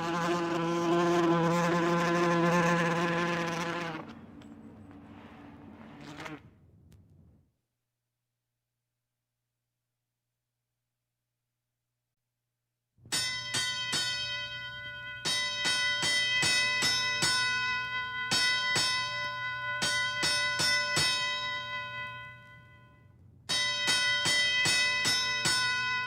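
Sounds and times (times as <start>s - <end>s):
bells ringing: 13.1s - 26.0s.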